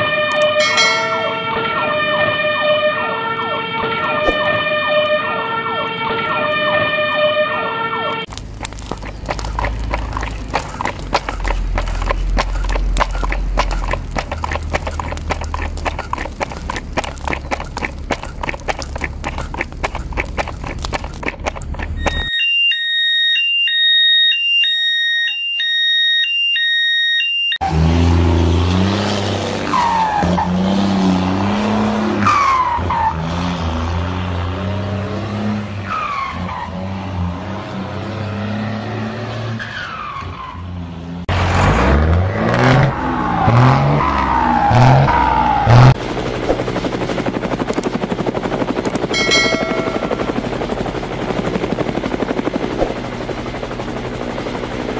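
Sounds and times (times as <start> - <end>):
low hum: 45.0 - 54.9.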